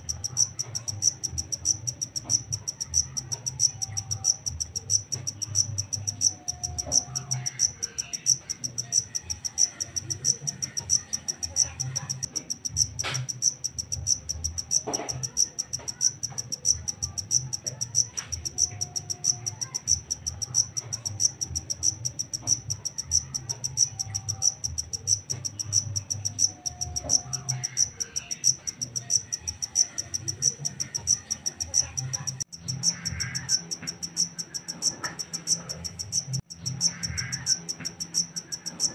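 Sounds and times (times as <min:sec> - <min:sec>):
cricket chirping: 0:00.0 - 0:38.9.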